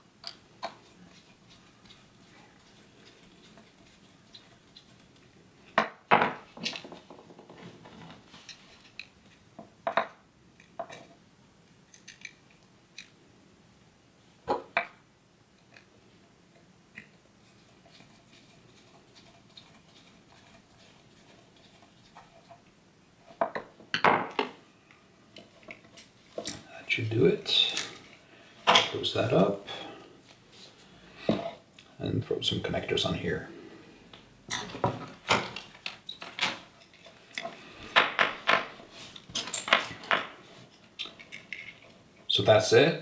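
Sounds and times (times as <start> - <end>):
metal and plastic parts clattering: 39.3 - 40.3, 41.0 - 42.0.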